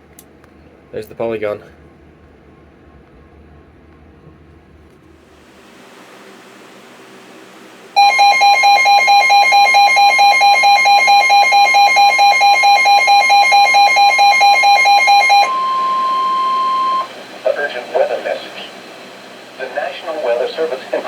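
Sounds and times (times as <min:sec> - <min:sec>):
pulsing alarm beeps: 0:08.0 - 0:18.8
steady high alert tone: 0:08.0 - 0:18.8.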